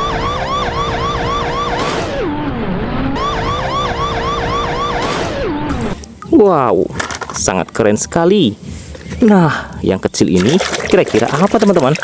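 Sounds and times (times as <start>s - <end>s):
police siren yelping: 0.0s - 5.8s.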